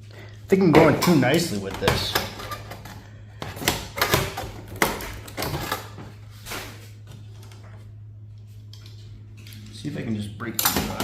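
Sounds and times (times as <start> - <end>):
steady low hum: 0.0 - 11.0
metal and plastic parts clunking: 0.6 - 6.1, 10.6 - 11.0.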